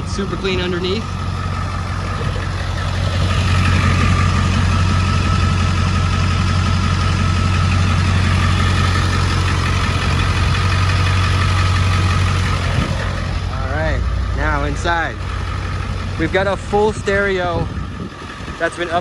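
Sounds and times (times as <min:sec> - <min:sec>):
diesel engine idling: 0:00.0 - 0:19.0.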